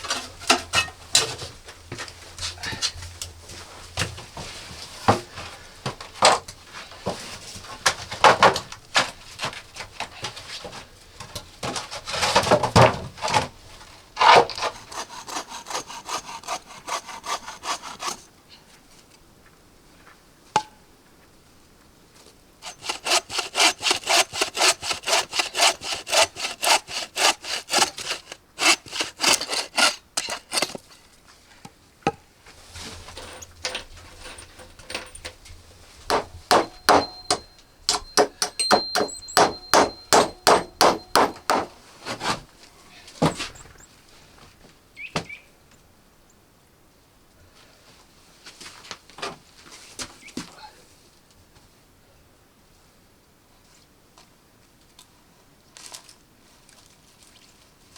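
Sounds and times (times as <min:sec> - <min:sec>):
hand saw cutting wood: 0:14.2 - 0:18.3, 0:22.6 - 0:30.9, 0:36.1 - 0:42.4.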